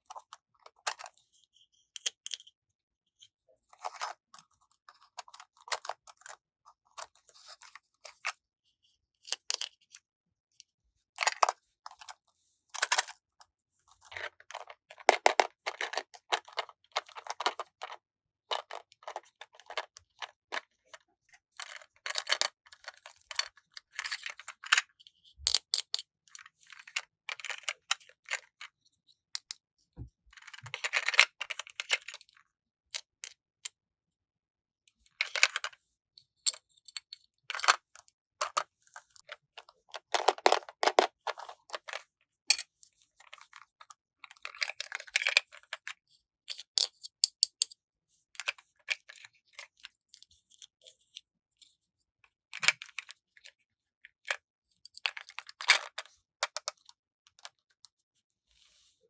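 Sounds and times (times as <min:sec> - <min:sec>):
toy pieces clicking and tapping: 0:14.2 - 0:20.2, 0:21.6 - 0:28.5, 0:39.9 - 0:42.7, 0:46.5 - 0:47.8.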